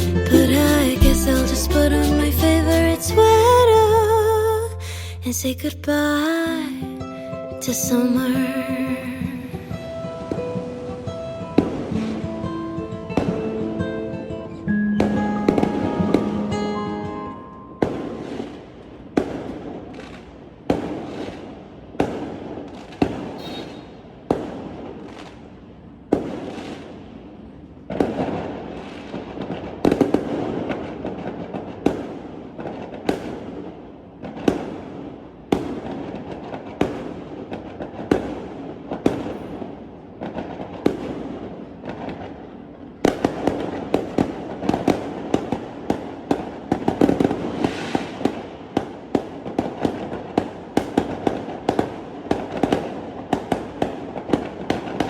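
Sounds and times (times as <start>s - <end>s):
fireworks bangs with rumbling echo: 10.2s - 12.3s, 17.8s - 55.0s.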